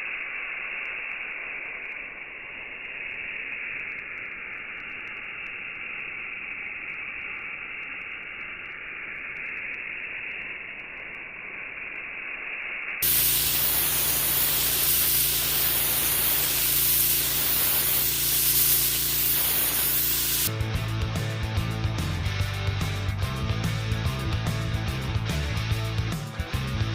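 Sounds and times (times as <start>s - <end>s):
pressure washer spraying hiss: 9.1s - 20.5s
gas engine running: 13.0s - 26.0s
music: 20.5s - 26.9s.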